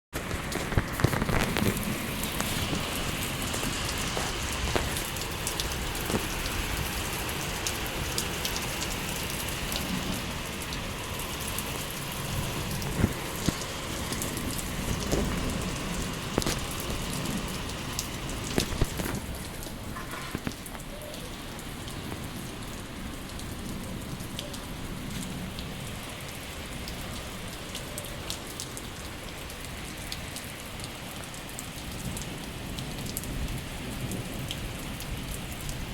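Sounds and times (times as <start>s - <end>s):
drips and splashes: 0.2s - 35.9s
rain pattering on hard surfaces: 0.2s - 35.9s.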